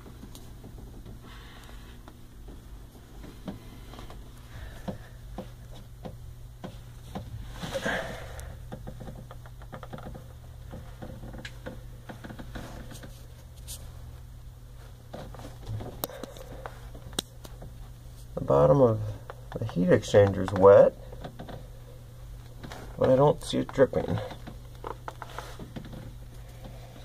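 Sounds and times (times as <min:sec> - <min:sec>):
steady low hum: 0:00.0 - 0:27.0
rustling scrape: 0:07.4 - 0:08.1, 0:25.2 - 0:25.7.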